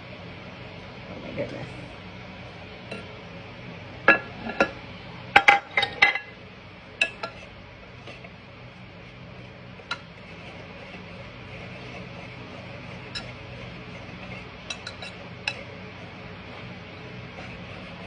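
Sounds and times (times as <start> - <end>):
utensil clinking against bowl: 7.0 - 7.4, 14.6 - 15.7.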